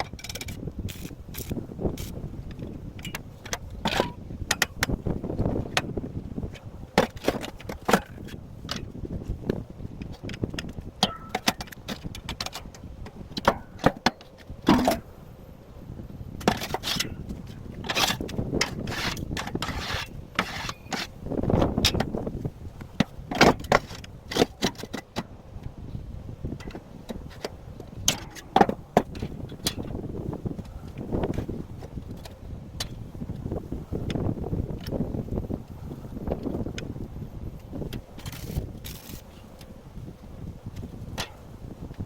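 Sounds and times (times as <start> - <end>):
steel parts clanking and scraping: 0.0 - 4.7, 10.3 - 12.7, 16.4 - 22.1, 26.6 - 30.0, 38.2 - 39.6.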